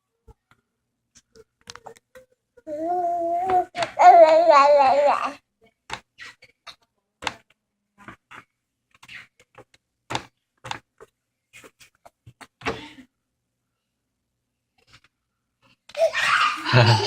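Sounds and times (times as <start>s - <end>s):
faint toddler voice: 1.3s - 5.5s.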